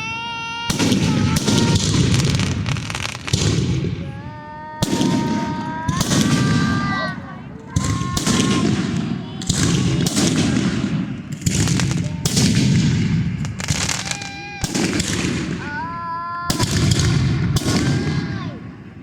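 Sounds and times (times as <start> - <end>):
fireworks bangs with rumble: 0.0 - 19.0.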